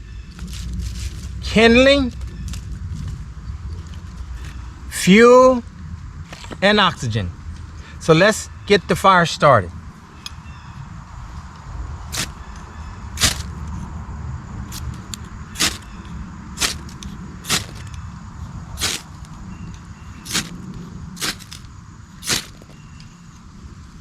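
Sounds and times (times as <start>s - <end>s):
ferro rod scraping: 12.1s - 12.4s, 13.2s - 13.6s, 15.6s - 15.9s, 16.6s - 18.0s, 18.8s - 19.3s, 20.2s - 20.6s, 21.2s - 22.8s.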